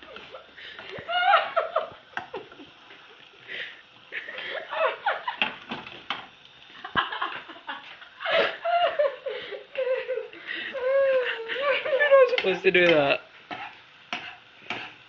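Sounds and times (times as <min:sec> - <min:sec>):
giggling and laughter: 0:00.0 - 0:03.4, 0:04.1 - 0:05.4, 0:06.8 - 0:12.3.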